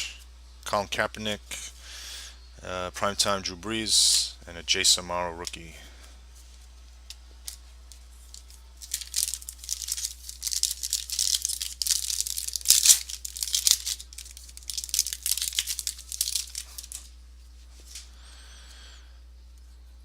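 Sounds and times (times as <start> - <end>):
wrapper tearing and crinkling: 8.2 - 17.1.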